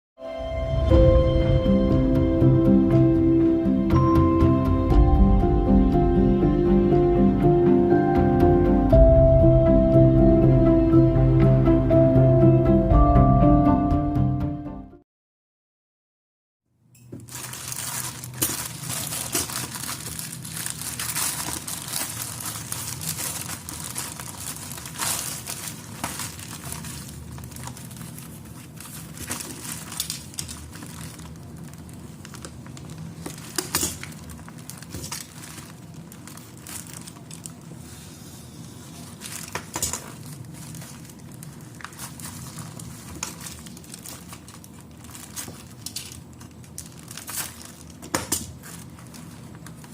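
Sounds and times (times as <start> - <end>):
plastic packaging crinkling: 17.1 - 38.0, 38.6 - 49.9.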